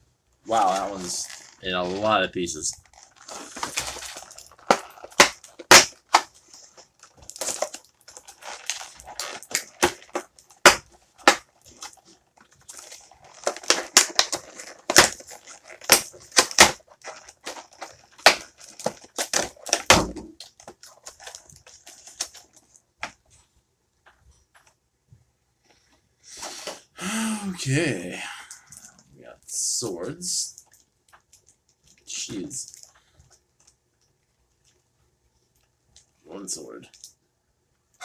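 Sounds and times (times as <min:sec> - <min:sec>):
plastic packaging crinkling: 0:00.5 - 0:23.4.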